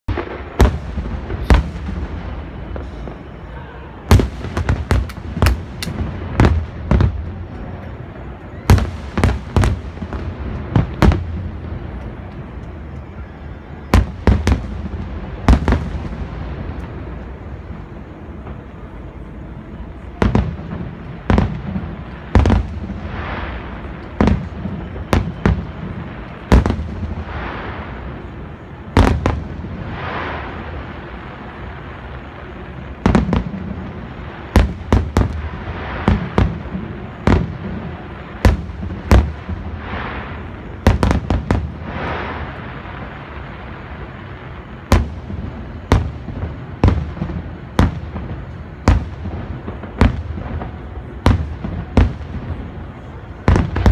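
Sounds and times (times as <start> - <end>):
fireworks bangs: 0.0 - 53.9
fireworks crackle: 0.0 - 53.9
low rolling echoes: 0.1 - 53.9.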